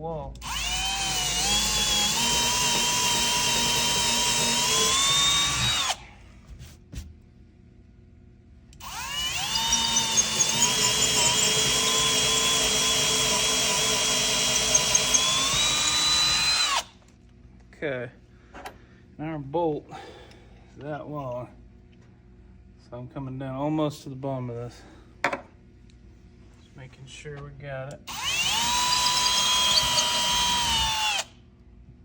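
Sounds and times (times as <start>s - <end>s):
electric drill boring into wall: 0.4s - 6.0s, 8.8s - 16.9s, 28.1s - 31.4s.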